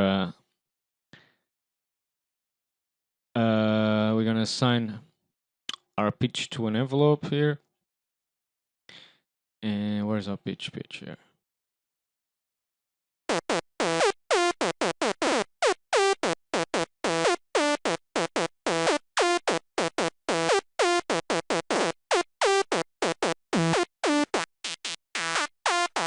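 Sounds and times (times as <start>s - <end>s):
high-pitched synth lead melody: 13.3s - 26.0s.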